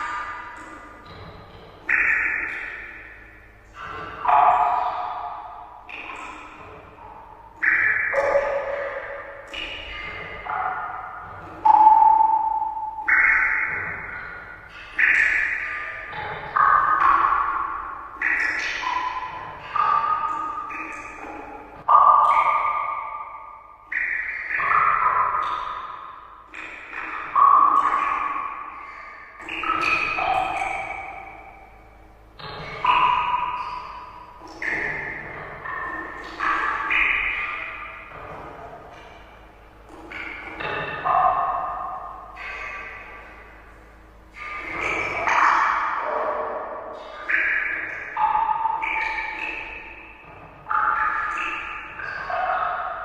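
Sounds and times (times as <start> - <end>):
water drops pinging: 0.0 - 53.0.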